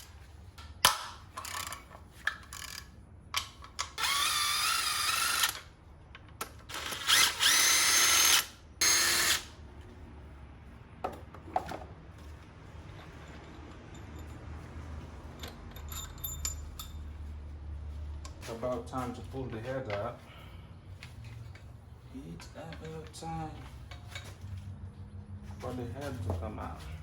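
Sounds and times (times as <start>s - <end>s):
power tool motor whining: 4.0s - 5.6s, 6.7s - 9.5s.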